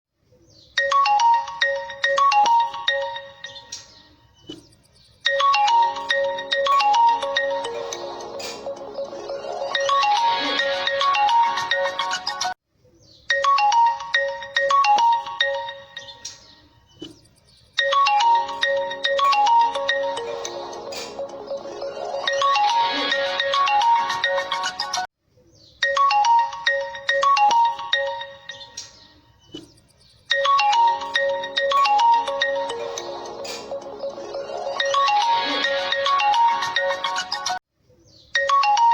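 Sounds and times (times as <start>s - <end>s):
phone ringtone tune: 0.8s - 4.0s, 5.2s - 12.6s, 13.3s - 16.6s, 17.8s - 25.1s, 25.8s - 29.0s, 30.3s - 37.6s, 38.4s - 38.9s.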